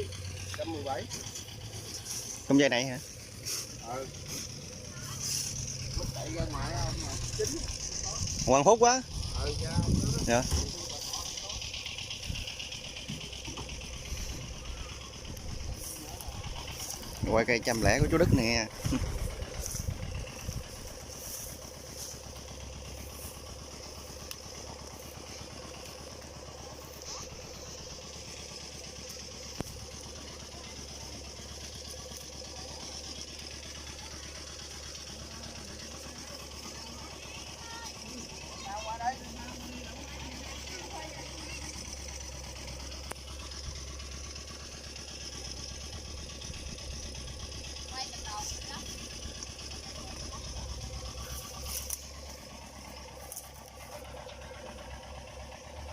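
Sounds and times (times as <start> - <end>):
diesel engine idling: 0.0 - 55.9.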